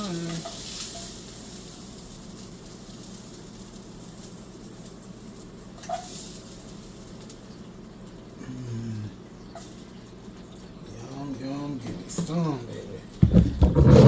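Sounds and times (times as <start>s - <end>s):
vegetables sizzling in oil: 0.0s - 10.8s.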